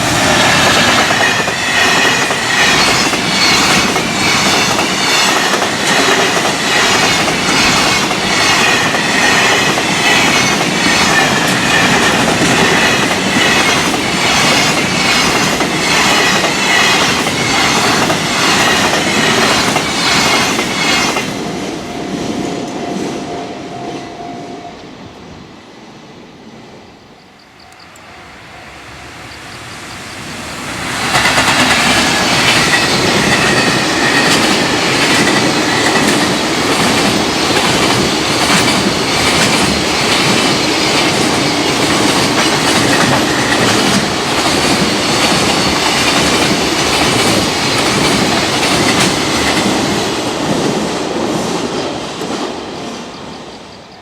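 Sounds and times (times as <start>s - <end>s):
train wheels clattering over rail joints: 0.0s - 21.3s, 31.0s - 50.8s
faint train rumble: 0.0s - 54.0s.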